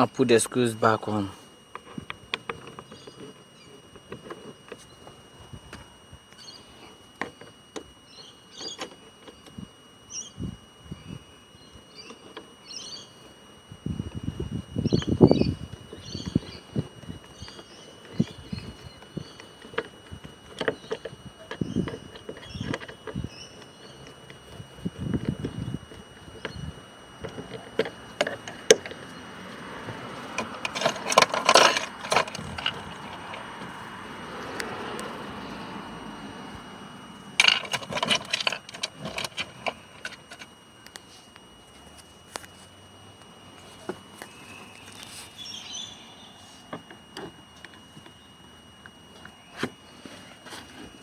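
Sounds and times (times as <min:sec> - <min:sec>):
faint steady high whine: 0:00.0 - 0:51.0
bird chirps: 0:06.4 - 0:06.9, 0:08.0 - 0:09.5, 0:10.1 - 0:13.2, 0:14.8 - 0:19.8, 0:20.6 - 0:24.2, 0:44.2 - 0:46.6
scraping rattles: 0:30.4 - 0:33.2, 0:37.4 - 0:40.4
tools and parts clicking: 0:30.4 - 0:33.2, 0:37.4 - 0:40.5.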